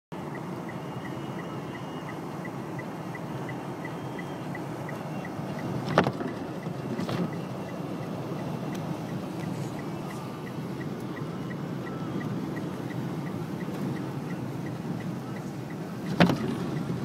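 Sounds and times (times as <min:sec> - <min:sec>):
light repeating tick: 0:02.1 - 0:17.0
wind gust slamming car: 0:05.7 - 0:07.4, 0:16.0 - 0:17.0.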